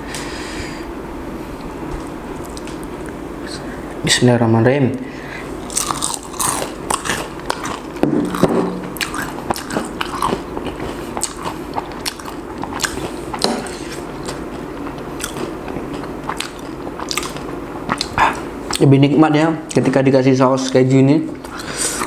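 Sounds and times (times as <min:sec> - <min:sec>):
crunchy food chewing: 0:05.6 - 0:18.9.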